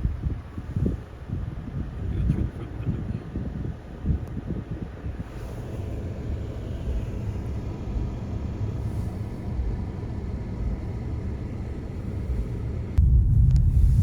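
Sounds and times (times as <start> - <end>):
road and engine rumble inside car: 0.0 - 14.0.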